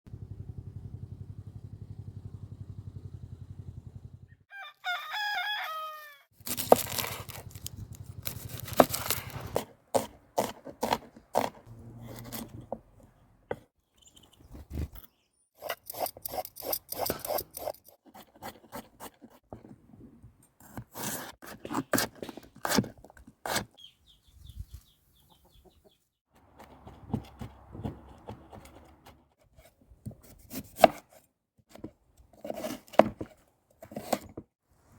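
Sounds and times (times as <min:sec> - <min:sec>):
rooster crowing: 0:04.5 - 0:06.3.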